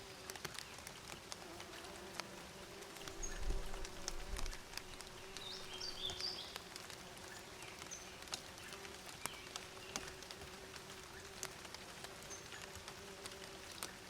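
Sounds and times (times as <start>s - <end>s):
light ticks: 0.1s - 7.0s, 7.8s - 14.0s
bees buzzing: 1.4s - 7.3s.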